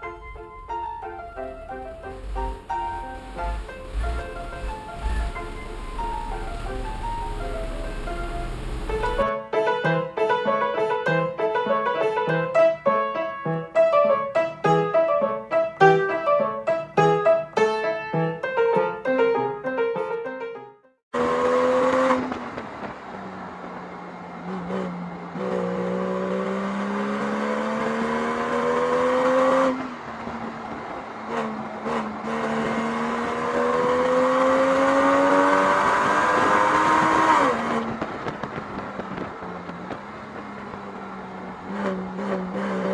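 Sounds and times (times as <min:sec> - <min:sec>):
piano-like background music: 0:00.0 - 0:21.0
car engine accelerating: 0:02.1 - 0:09.3, 0:31.4 - 0:38.0.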